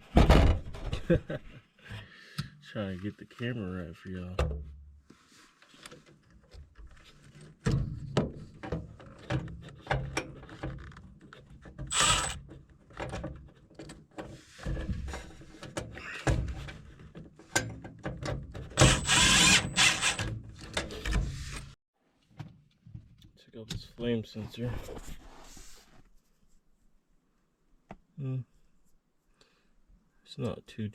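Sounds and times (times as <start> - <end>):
rustling or scraping: 5.1 - 7.6, 14.2 - 17.6, 18.9 - 21.8, 24.3 - 26.9.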